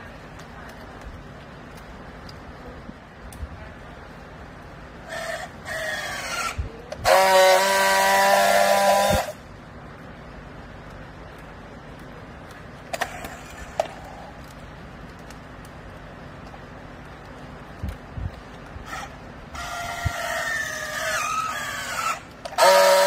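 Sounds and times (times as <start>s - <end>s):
low machine hum: 0.0s - 23.0s
faint clicks: 0.2s - 2.5s, 10.7s - 18.8s
horn sounding: 7.0s - 9.4s, 22.4s - 23.0s.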